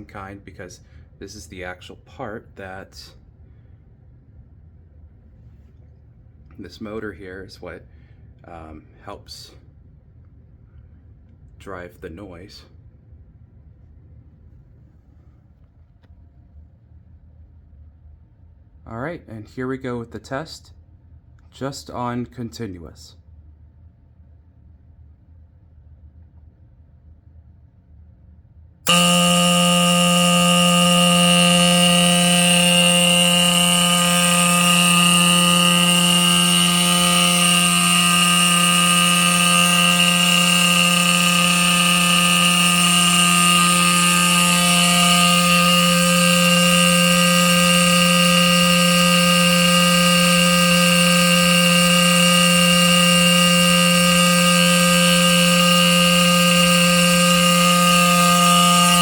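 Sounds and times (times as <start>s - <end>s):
fire alarm horn sounding: 28.8s - 59.0s.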